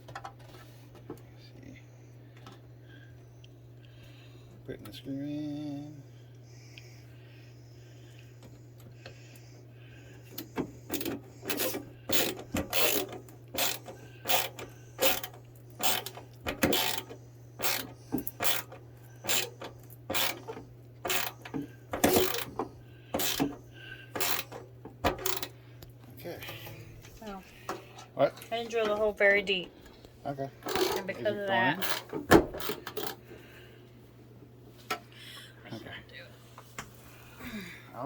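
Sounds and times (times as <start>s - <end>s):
low steady hum: 0.0s - 38.0s
screwdriver creaking into wood: 10.4s - 22.6s, 23.2s - 23.6s, 24.2s - 25.5s, 30.7s - 31.1s, 31.8s - 33.2s.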